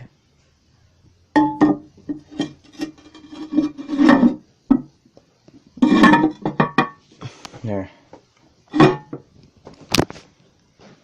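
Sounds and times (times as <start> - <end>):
ceramic lid clunks and scrapes: 1.4 - 4.9, 5.8 - 7.0, 8.7 - 9.2.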